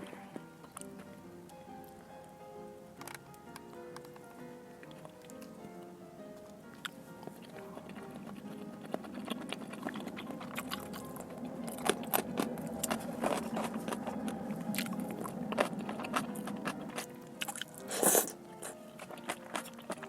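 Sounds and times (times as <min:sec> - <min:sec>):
person chewing food: 0:06.8 - 0:20.0.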